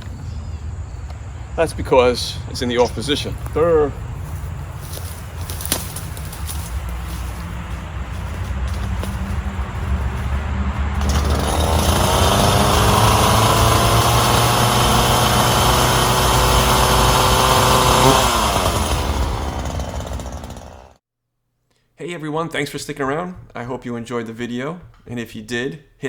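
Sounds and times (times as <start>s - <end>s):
chainsaw idling and revving: 4.9s - 21.0s.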